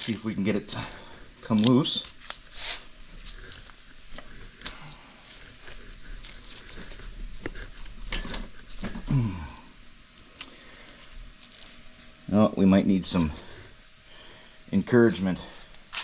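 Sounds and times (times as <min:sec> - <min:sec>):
person grunting with effort: 0:08.8 - 0:09.8.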